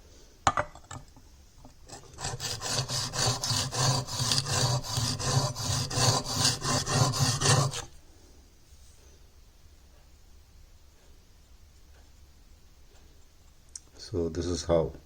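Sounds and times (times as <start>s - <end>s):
chisel scraping on sharpening stone: 1.9s - 7.9s.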